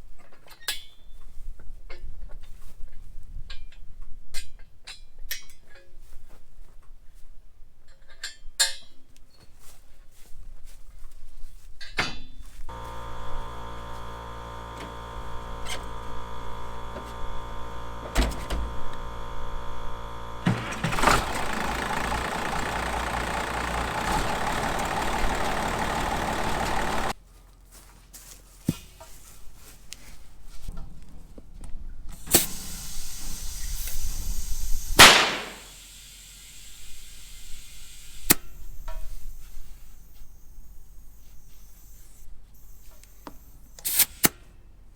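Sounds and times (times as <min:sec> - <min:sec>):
engine running: 0:12.7 - 0:27.2, 0:32.2 - 0:36.0
scattered knocks: 0:15.8 - 0:27.1.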